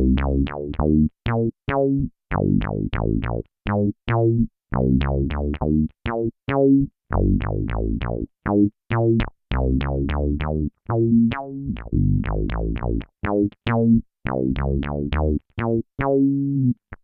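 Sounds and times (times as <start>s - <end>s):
staccato synth bass notes: 0.0s - 16.2s.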